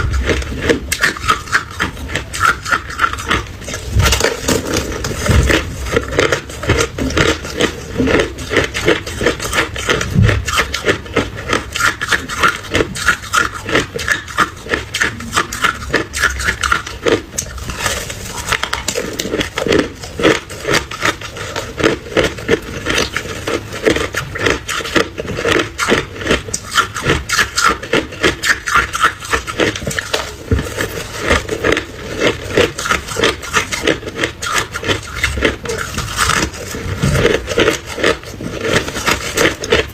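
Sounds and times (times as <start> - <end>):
ice crunching between teeth: 0.0 - 39.9.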